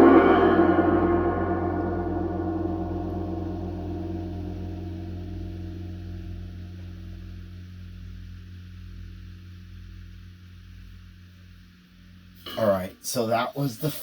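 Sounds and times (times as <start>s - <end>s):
orchestral cymbal struck with mallet: 0.0s - 9.0s.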